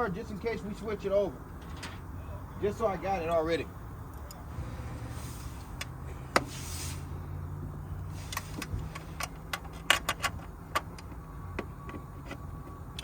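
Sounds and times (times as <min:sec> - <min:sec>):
steady low hum: 0:00.1 - 0:09.1
short hiss: 0:04.5 - 0:07.2, 0:08.0 - 0:08.8.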